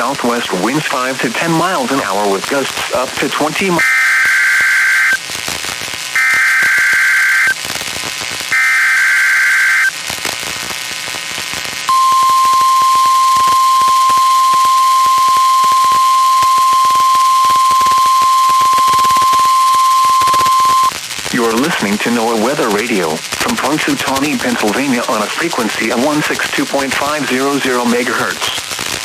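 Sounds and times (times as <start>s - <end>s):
radio static: 0.0s - 5.2s, 6.1s - 10.0s, 11.8s - 28.6s
steady warning alarm tone: 3.8s - 5.2s, 6.2s - 7.5s, 8.5s - 9.9s, 11.9s - 20.9s
buzzing digital data bursts: 3.8s - 5.3s, 6.1s - 10.0s, 11.9s - 20.9s.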